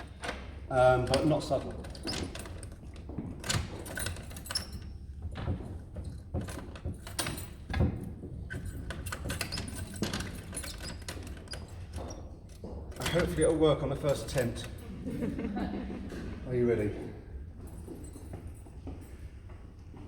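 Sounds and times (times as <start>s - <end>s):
keys and wooden fittings rattling: 0.0s - 19.4s.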